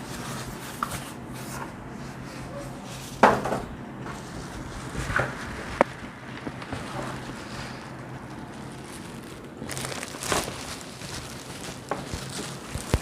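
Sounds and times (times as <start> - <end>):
steady low hum: 0.0 - 13.0
packaging rustling scrape: 4.0 - 13.0.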